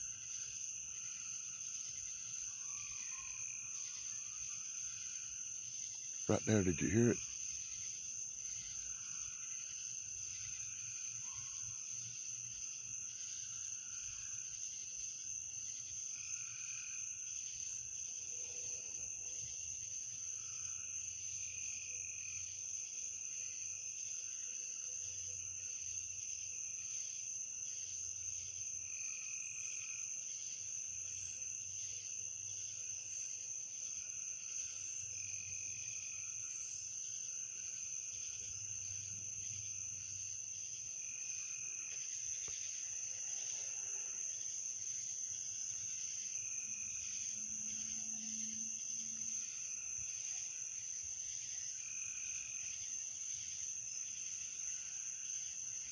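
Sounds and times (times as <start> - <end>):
crickets trilling: 27.2 - 55.9.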